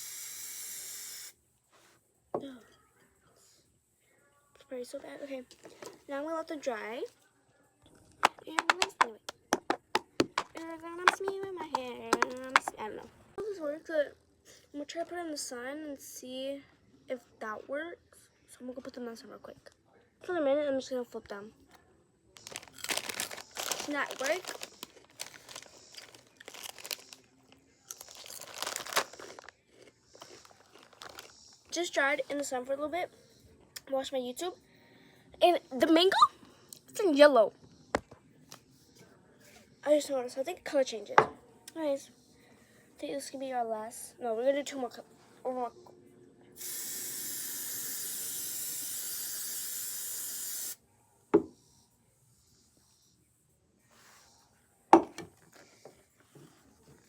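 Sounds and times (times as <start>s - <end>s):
aerosol can spraying: 0.0s - 1.3s, 8.2s - 12.7s, 46.6s - 50.8s
crinkling and rustling handling noise: 5.0s - 6.1s, 8.0s - 13.2s, 22.4s - 31.8s.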